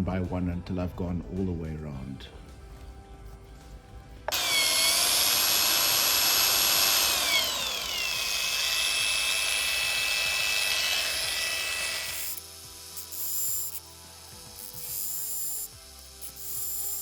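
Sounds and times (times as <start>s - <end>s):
angle grinder whining: 4.3s - 17.0s.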